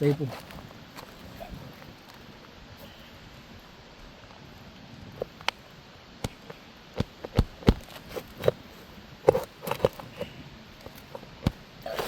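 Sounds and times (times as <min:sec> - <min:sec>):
scraping on shingle: 0:07.0 - 0:12.0.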